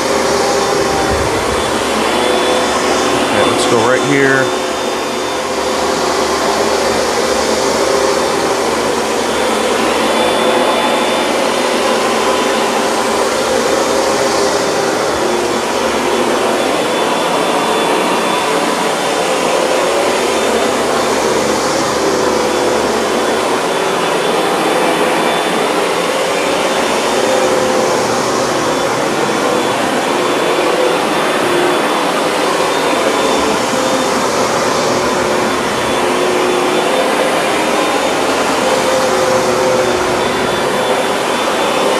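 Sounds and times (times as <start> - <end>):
carpet cleaner motor whine: 0.0 - 41.9.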